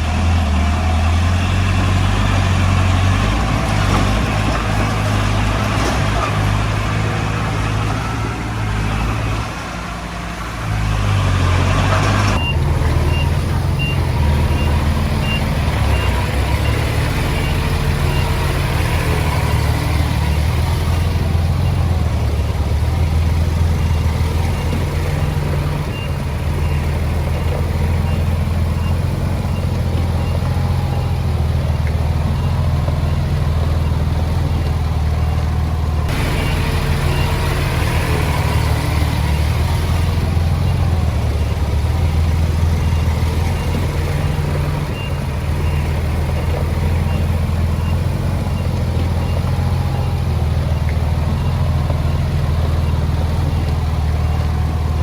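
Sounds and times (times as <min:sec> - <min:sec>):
bulldozer diesel engine running: 0:00.0 - 0:55.0
faint high beep: 0:36.1 - 0:41.6.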